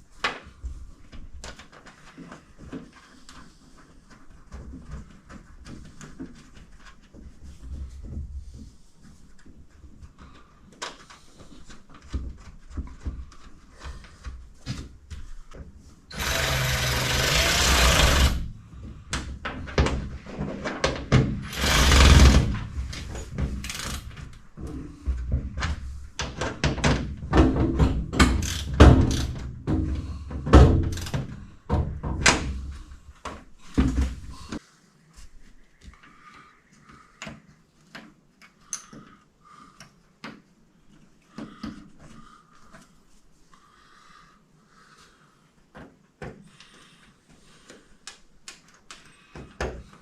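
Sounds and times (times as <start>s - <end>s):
clicks and knocks of hand work: 0.1s - 34.6s, 35.8s - 43.0s, 45.7s - 50.0s
power tool bursts: 16.1s - 18.5s, 21.4s - 22.6s.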